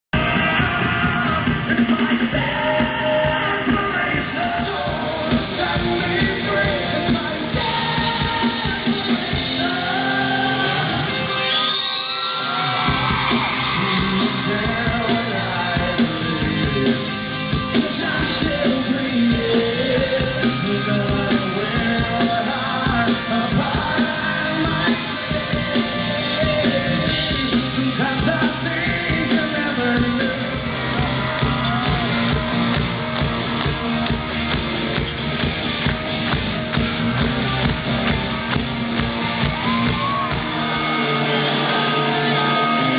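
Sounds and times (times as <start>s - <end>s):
rock band playing: 0.1s - 42.9s
male lead vocal singing: 0.2s - 11.7s, 13.6s - 32.0s
shouts: 10.2s - 14.8s, 39.0s - 42.9s.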